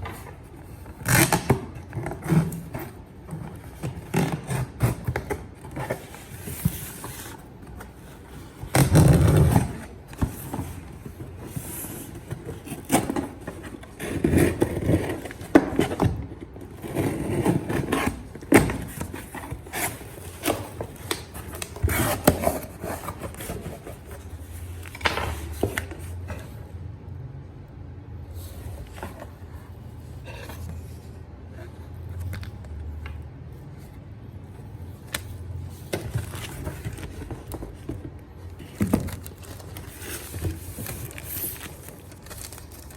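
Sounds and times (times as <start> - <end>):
packaging being handled: 35.1 - 42.9.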